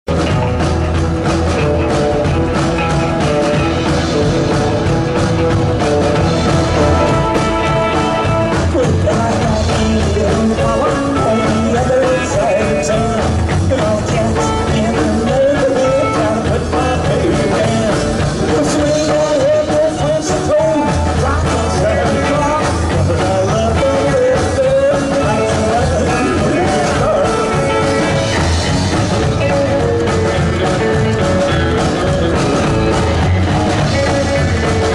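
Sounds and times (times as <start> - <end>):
rock band playing live: 0.0 - 34.9
wavering lead melody: 1.4 - 9.0.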